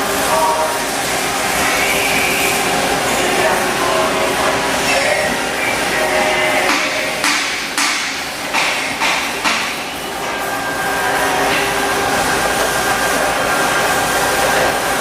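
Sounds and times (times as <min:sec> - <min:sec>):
machine hum and whine: 0:00.0 - 0:15.0
sharp metallic clunks: 0:06.6 - 0:10.4.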